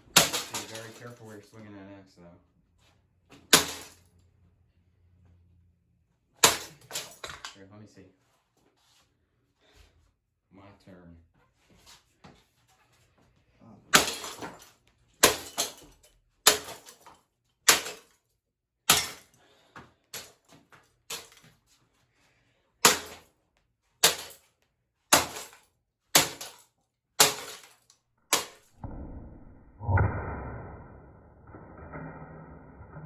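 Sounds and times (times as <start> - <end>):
axe strikes smashing metal: 0.1 - 1.2, 3.5 - 4.0, 6.4 - 7.3, 13.9 - 14.6, 15.2 - 15.8, 16.5 - 17.0, 17.7 - 18.1, 18.9 - 19.3, 22.8 - 23.2, 24.0 - 24.4, 25.1 - 25.6, 26.2 - 26.6, 27.2 - 28.7
dull muffled noise: 28.8 - 33.0.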